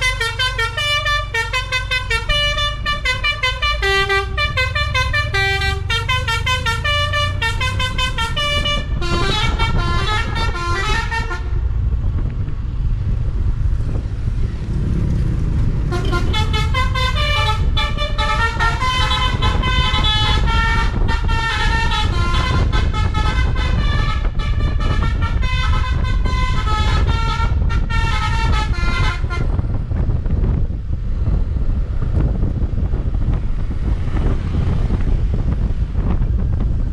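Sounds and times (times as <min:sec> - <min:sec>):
bus horn playing tunes: 0:00.0 - 0:11.6, 0:15.9 - 0:29.8
steady low rumble: 0:00.0 - 0:36.9.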